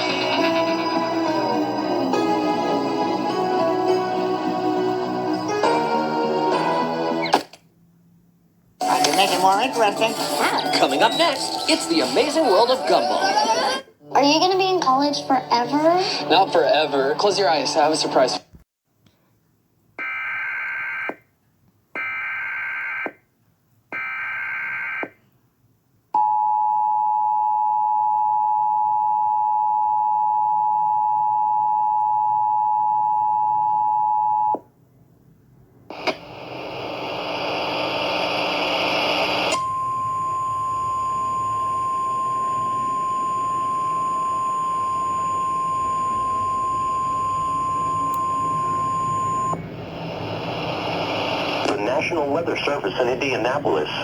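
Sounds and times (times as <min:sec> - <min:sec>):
radio static: 0:08.8 - 0:13.6, 0:35.9 - 0:39.6, 0:42.2 - 0:54.0
harsh data tones: 0:08.8 - 0:13.8, 0:36.3 - 0:54.0
two-tone attention signal: 0:39.5 - 0:49.6
single-pitch warning tone: 0:39.5 - 0:49.7.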